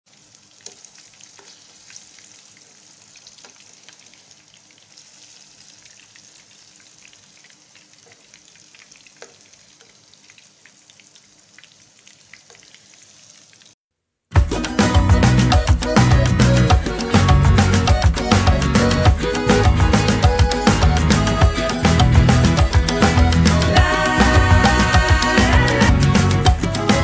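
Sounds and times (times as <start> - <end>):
food sizzling in hot oil: 0.1 - 13.8
oil popping and crackling: 0.1 - 13.8.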